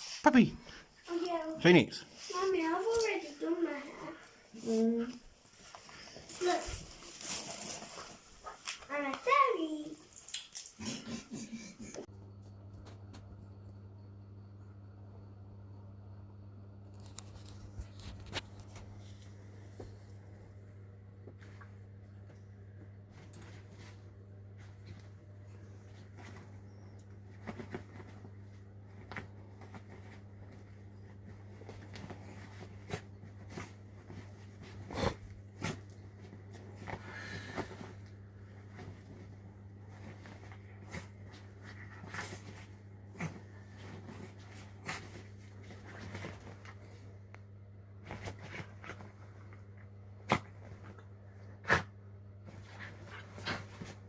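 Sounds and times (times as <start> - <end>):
steady low hum: 0.0 - 54.0
dog scuffling and pawing: 4.6 - 10.5, 23.1 - 47.1, 48.0 - 54.0.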